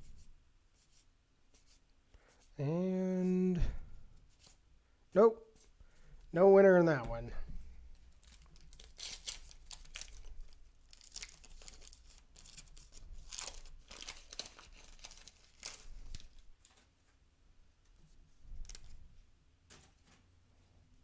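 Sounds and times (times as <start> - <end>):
wrapper crinkling and rustling: 7.9 - 16.8
wax paper wrapper tearing: 8.2 - 16.4.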